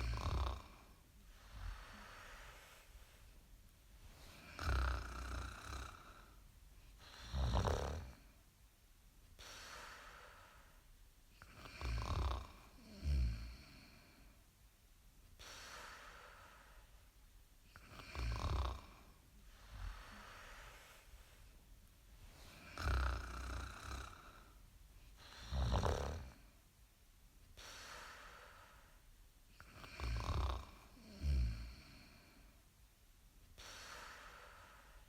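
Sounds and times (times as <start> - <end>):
loud rattling snores: 0.0 - 0.8, 4.4 - 6.2, 7.1 - 8.2, 11.6 - 13.7, 17.8 - 19.0, 22.6 - 24.4, 25.2 - 26.4, 29.7 - 32.0
soft breathing: 0.0 - 8.5, 9.3 - 14.6, 15.3 - 26.8, 27.5 - 32.8, 33.4 - 35.0.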